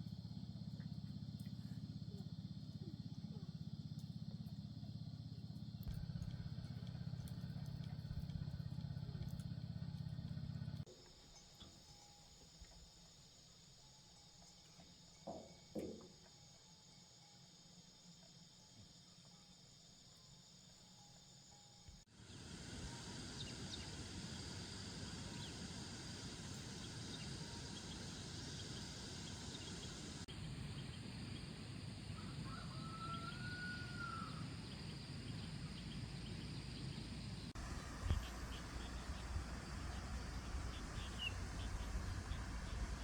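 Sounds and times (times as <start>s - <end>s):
insects hissing: 11.0s - 43.0s.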